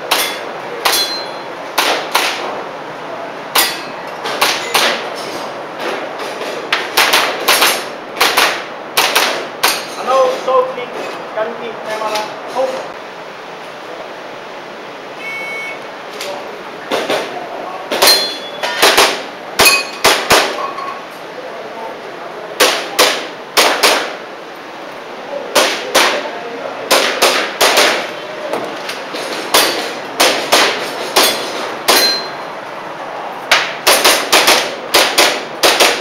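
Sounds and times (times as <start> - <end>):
airsoft pistol shots: 1.8 - 2.4, 6.9 - 9.8, 22.6 - 24.2, 26.9 - 28.1, 33.5 - 36.0.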